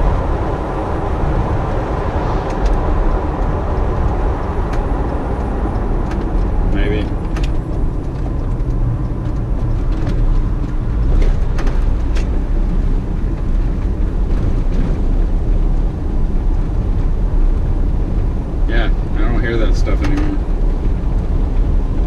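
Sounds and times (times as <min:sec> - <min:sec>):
road rumble: 0:00.0 - 0:22.0
tyre and wind noise: 0:00.0 - 0:22.0.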